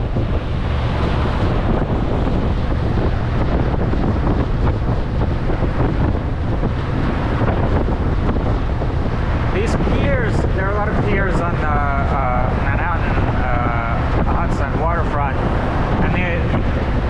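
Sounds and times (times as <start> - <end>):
low boat rumble: 0.0 - 17.0
rushing water: 0.0 - 17.0
wind buffeting microphone: 0.0 - 17.0.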